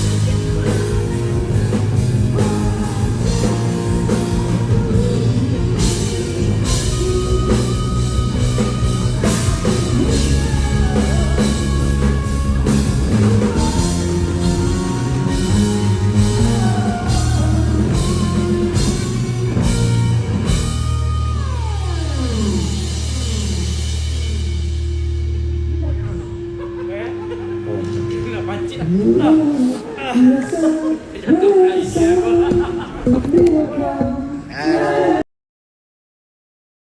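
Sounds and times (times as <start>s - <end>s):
drum kit beat: 0.0s - 25.5s
rock band playing: 0.0s - 30.0s.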